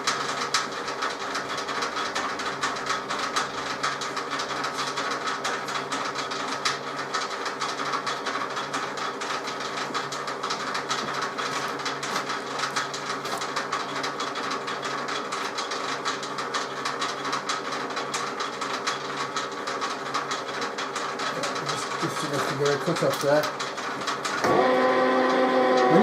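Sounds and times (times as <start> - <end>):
rapid metal clatter: 0.0 - 24.4
lathe gear whine: 20.7 - 26.0.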